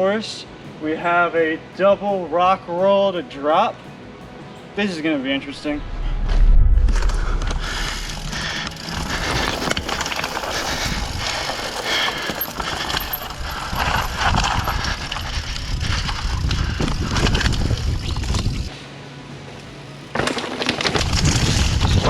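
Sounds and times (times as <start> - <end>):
bike tyres rolling over rock: 6.9 - 18.7, 20.1 - 22.0
bike rattling and knocking: 7.6 - 18.6.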